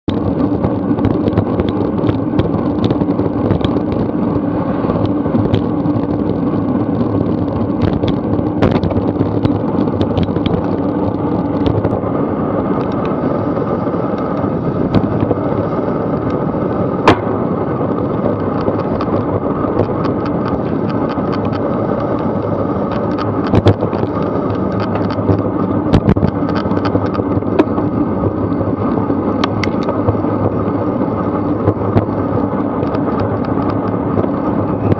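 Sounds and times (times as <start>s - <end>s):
road and traffic noise: 0.0s - 34.9s
bike knocking and rattling: 0.1s - 34.9s
sharp crack: 17.0s - 17.5s.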